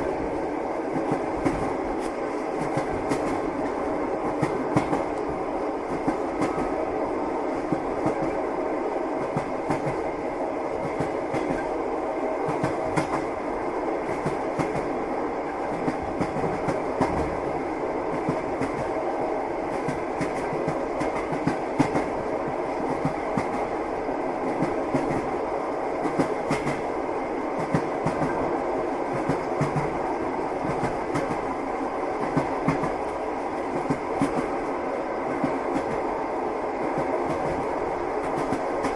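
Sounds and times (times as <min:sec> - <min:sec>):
train running rumble: 0:00.0 - 0:38.9
train wheels clattering: 0:00.9 - 0:06.8, 0:09.2 - 0:10.1, 0:10.7 - 0:11.8, 0:12.4 - 0:13.4, 0:14.0 - 0:17.5, 0:18.1 - 0:19.0, 0:19.7 - 0:23.8, 0:24.4 - 0:25.3, 0:26.0 - 0:26.9, 0:27.6 - 0:28.5, 0:29.1 - 0:31.5, 0:32.2 - 0:34.6, 0:36.8 - 0:38.9.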